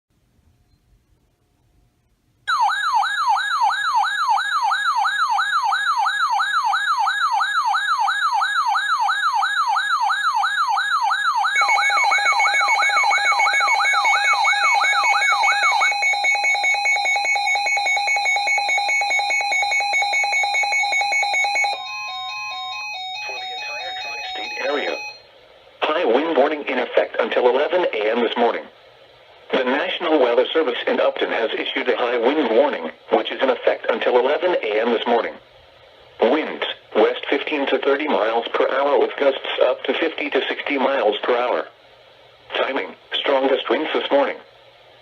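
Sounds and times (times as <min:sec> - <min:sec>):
wailing siren tone: 0:02.5 - 0:25.3
steady two-tone alarm: 0:02.5 - 0:25.4.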